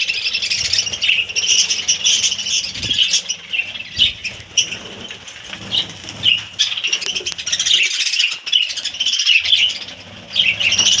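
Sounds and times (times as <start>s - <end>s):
budgerigars chattering: 0.0s - 11.0s.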